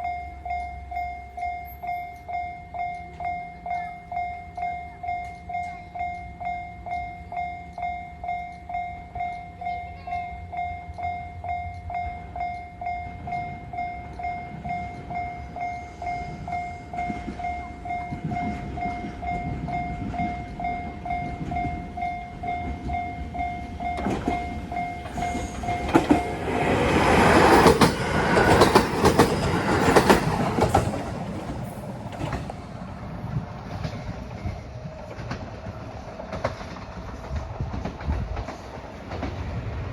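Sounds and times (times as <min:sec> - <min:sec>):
level-crossing bell ringing: 0:00.0 - 0:32.7
train wheels clattering over joints: 0:16.1 - 0:39.9.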